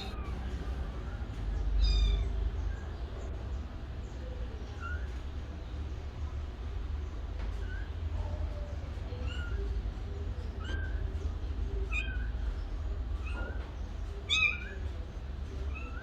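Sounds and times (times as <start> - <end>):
steady low hum: 0.0 - 16.0
kitten meowing: 1.8 - 2.3, 14.3 - 14.8.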